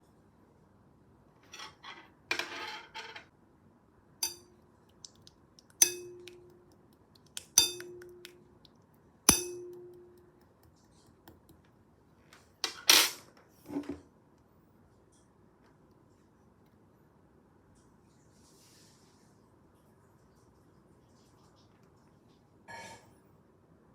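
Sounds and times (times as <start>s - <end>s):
hard object clinking with ring: 4.2s - 4.5s, 5.8s - 6.8s, 7.4s - 8.4s, 9.3s - 10.4s.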